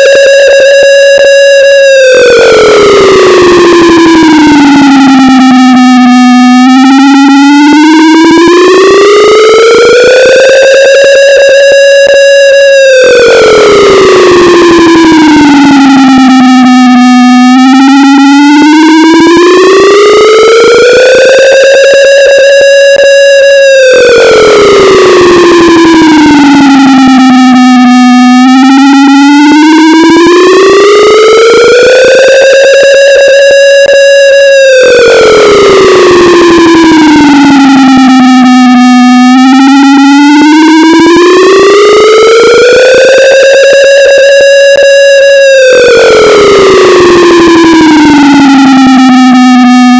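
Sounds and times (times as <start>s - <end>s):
distorted air raid siren wailing: 0.0s - 49.9s.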